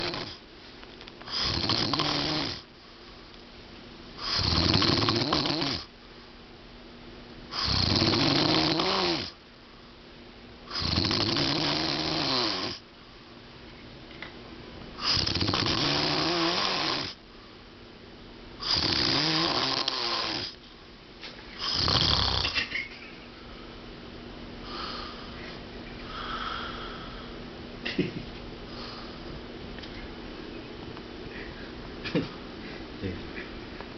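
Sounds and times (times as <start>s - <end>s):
man snoring loudly: 0.0s - 0.4s, 1.3s - 2.7s, 4.2s - 5.9s, 7.6s - 9.4s, 10.7s - 12.8s, 15.0s - 17.2s, 18.6s - 20.5s, 21.6s - 22.6s
soft breathing: 24.6s - 27.4s, 28.7s - 29.4s, 31.2s - 31.9s.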